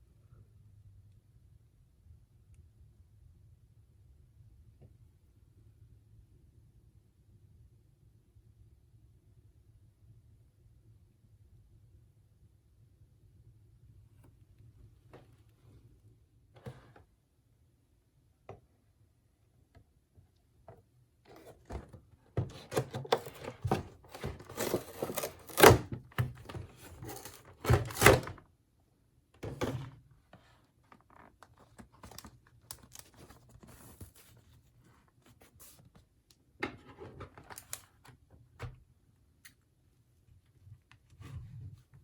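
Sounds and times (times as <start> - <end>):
packaging rustling and scraping: 21.3 - 28.4, 30.9 - 35.9.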